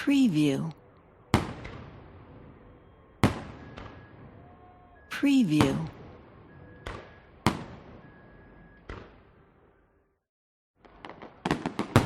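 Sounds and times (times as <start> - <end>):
distant fireworks booming: 1.3 - 9.6, 10.8 - 12.0
firework crackling pops: 10.8 - 12.0.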